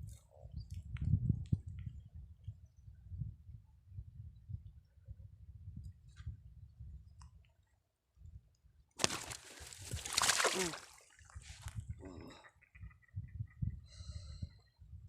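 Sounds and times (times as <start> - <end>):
water splashing and sloshing: 9.0 - 11.6.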